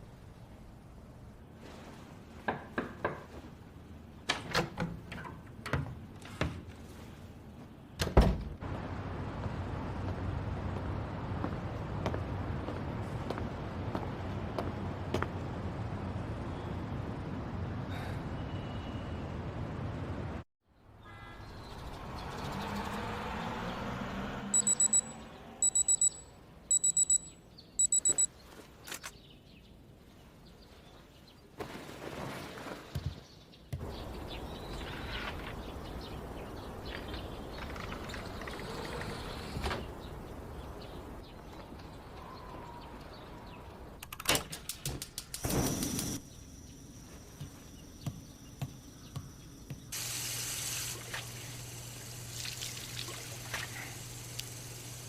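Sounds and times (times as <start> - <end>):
high electronic alarm beeping: 24.5 - 28.3.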